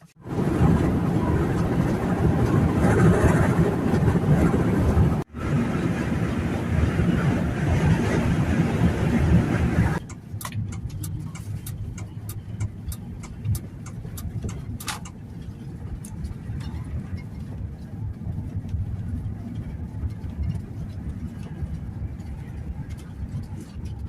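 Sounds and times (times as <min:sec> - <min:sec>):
engine and road rumble: 0:00.0 - 0:24.0
light clicks and rattles: 0:10.0 - 0:24.0.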